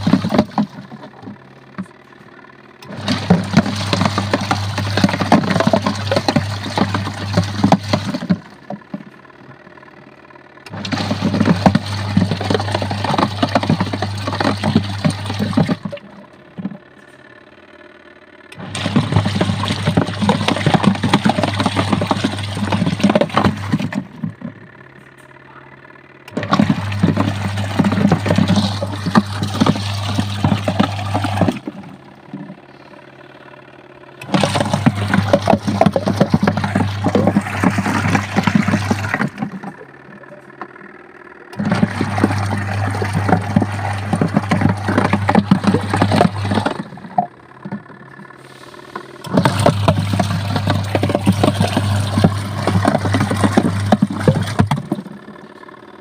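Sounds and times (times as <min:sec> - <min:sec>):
washing machine churning water: 0:00.0 - 0:56.0.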